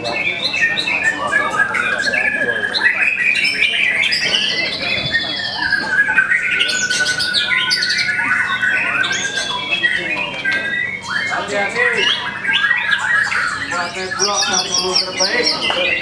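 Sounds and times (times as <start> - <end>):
birds whistling and trilling: 0.0 - 16.0.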